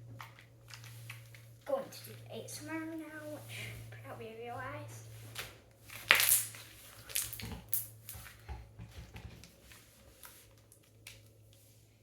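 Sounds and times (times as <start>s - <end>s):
slime squished with crackling pops: 5.4s - 8.5s.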